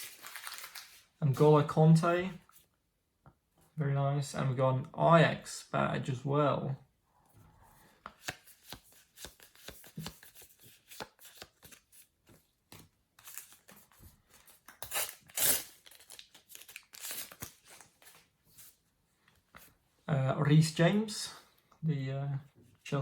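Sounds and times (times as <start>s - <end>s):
paper stickers crinkling: 0.0s - 1.1s, 13.2s - 18.2s
paper rustling: 0.0s - 1.4s, 8.0s - 18.8s.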